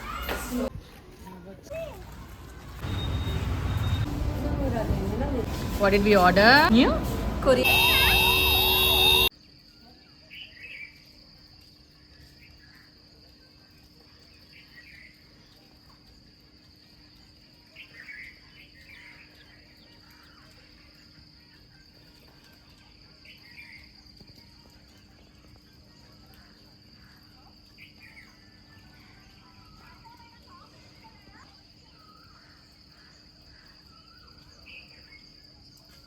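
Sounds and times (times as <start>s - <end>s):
insect chirps: 20.1s - 36.0s.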